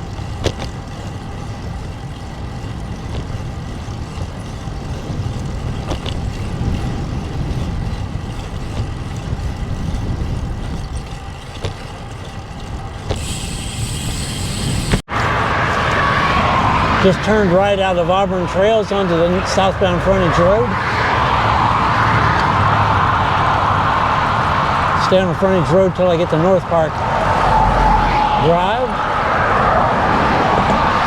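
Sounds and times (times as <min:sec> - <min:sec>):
bicycle tyre noise: 0:00.0 - 0:31.0
wind rushing over microphone: 0:00.0 - 0:31.0
bright hiss: 0:13.2 - 0:15.0.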